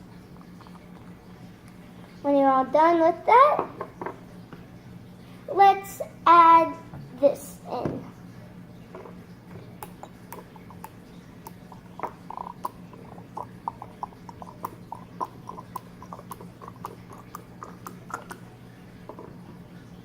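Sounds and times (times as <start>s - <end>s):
low steady hum: 0.0s - 20.0s
oil glugging into bottle: 8.8s - 19.6s.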